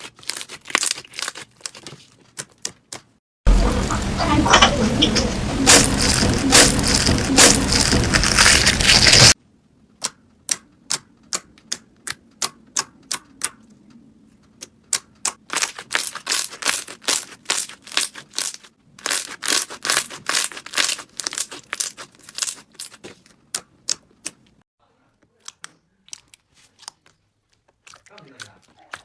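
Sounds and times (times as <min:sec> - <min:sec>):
loud crunching: 0:00.0 - 0:04.2, 0:05.6 - 0:09.4, 0:15.4 - 0:24.4.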